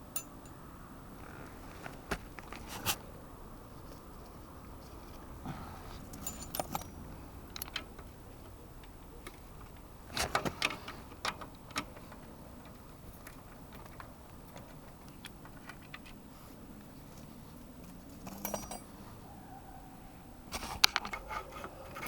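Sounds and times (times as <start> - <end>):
metal spanners clinking: 5.9 - 11.9, 18.1 - 19.1.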